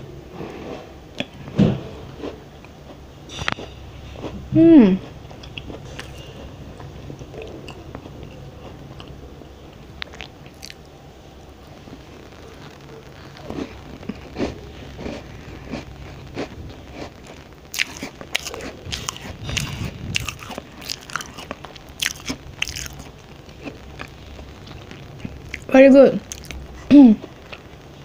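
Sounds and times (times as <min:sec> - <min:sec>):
chewing crunchy cookie: 0:05.0 - 0:10.9, 0:11.9 - 0:27.7.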